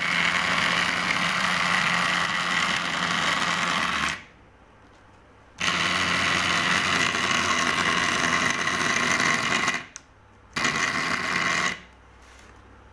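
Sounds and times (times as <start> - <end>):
small motor whining: 0.0 - 4.3, 5.6 - 10.0, 10.6 - 11.8.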